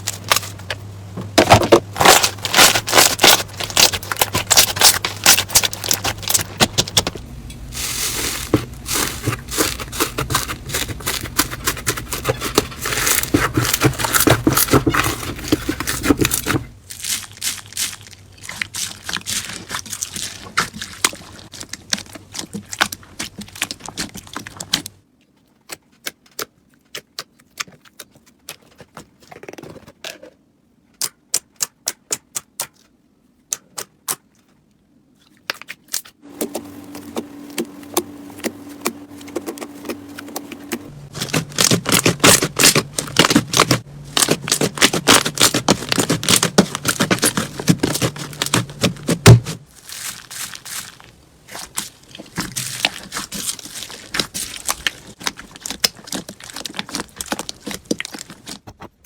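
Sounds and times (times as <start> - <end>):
crunchy slime clicking and crackling: 1.5 - 25.0, 35.5 - 58.8.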